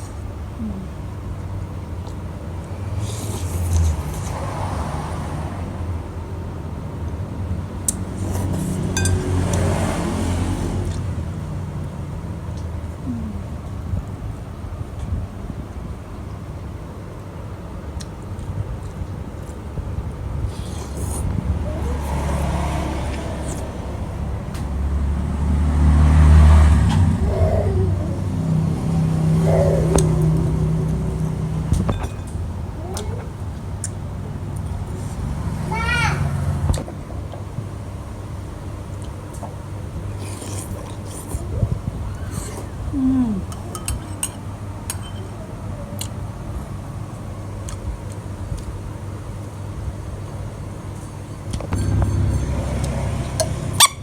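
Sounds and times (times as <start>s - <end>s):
road traffic rumble: 0.0s - 54.0s
vehicles passing: 0.0s - 54.0s
vehicle engine running: 20.9s - 38.9s, 49.9s - 54.0s.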